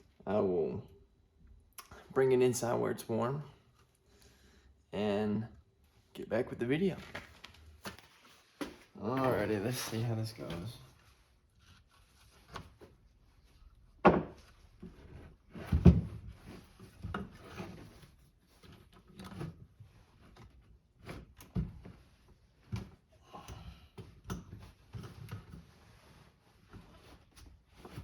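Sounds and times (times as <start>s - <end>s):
wooden board knocks and clunks: 14.0s - 14.4s.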